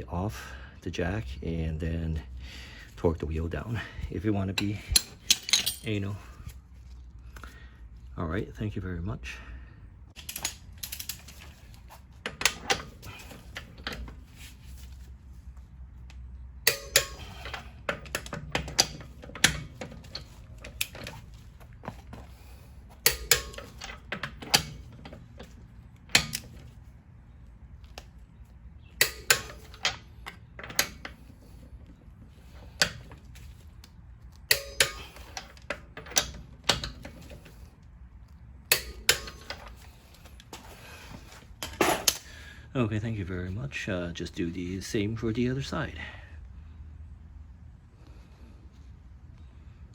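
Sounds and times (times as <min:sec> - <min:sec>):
wrench clicking on bolts: 0:16.6 - 0:21.2, 0:23.0 - 0:25.5, 0:29.0 - 0:31.3, 0:34.4 - 0:37.5, 0:38.7 - 0:39.8.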